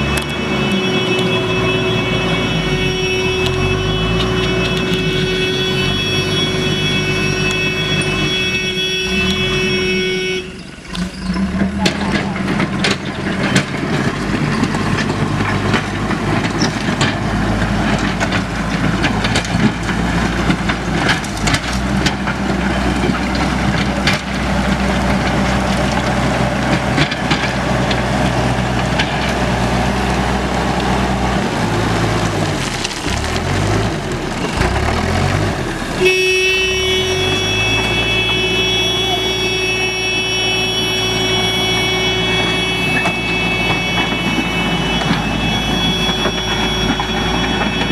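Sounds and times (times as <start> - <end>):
engine with high whining tones: 0.0 - 17.2
diesel engine running: 0.0 - 47.9.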